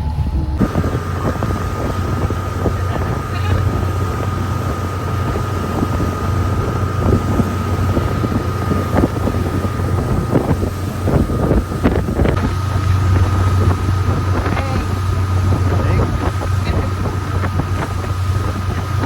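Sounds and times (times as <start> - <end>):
motorboat engine running: 0.0 - 19.0
wind buffeting microphone: 0.0 - 19.0.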